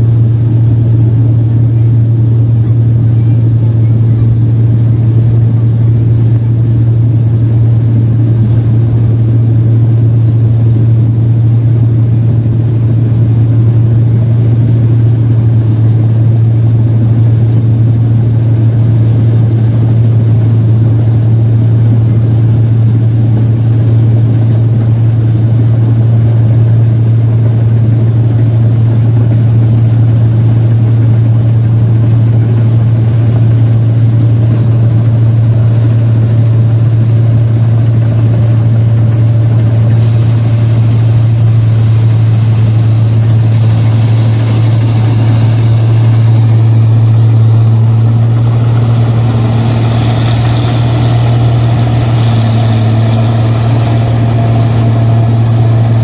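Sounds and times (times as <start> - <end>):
combine harvester engine droning: 0.0 - 56.0.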